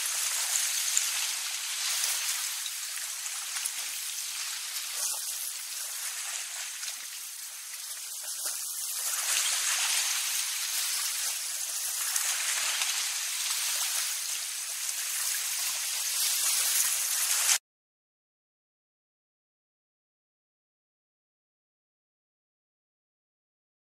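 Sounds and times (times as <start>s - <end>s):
water sprinkler spraying: 0.0s - 17.6s.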